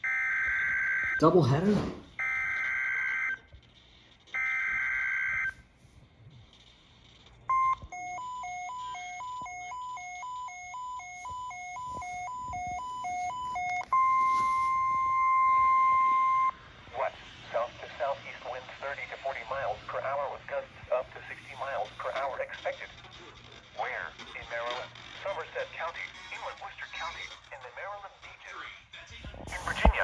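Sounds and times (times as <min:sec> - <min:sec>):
steady single-pitch alarm tone: 0:00.0 - 0:01.2, 0:02.2 - 0:05.6, 0:06.2 - 0:16.6.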